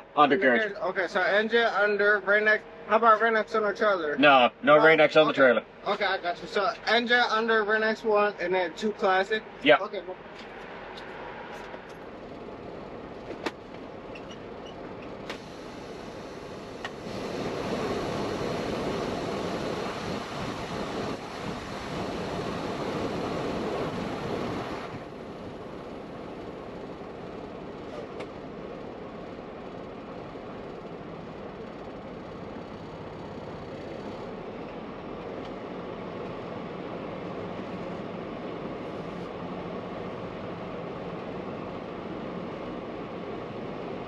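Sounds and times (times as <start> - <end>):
steady rushing noise: 15.4 - 44.0.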